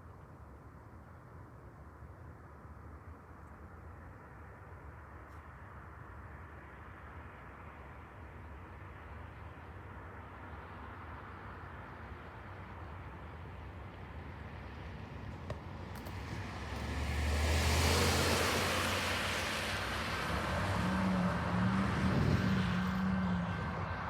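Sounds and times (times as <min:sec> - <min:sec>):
wheels rushing on rail: 0:16.0 - 0:24.0
diesel locomotive engine rumble: 0:20.8 - 0:24.0.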